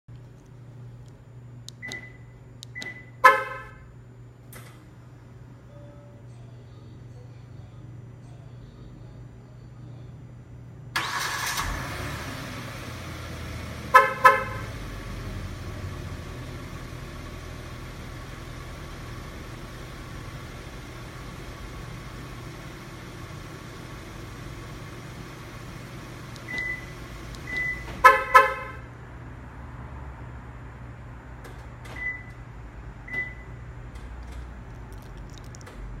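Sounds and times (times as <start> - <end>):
car horn toots: 3.2 - 3.9, 13.9 - 14.8, 27.7 - 28.9
car engine idling: 11.0 - 28.7.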